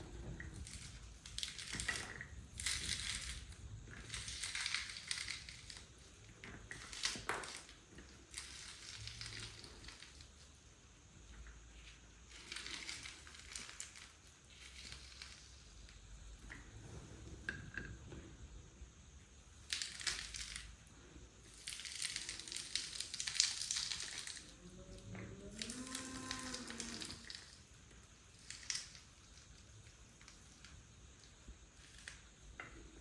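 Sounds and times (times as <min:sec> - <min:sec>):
crunching: 0:19.7 - 0:30.8.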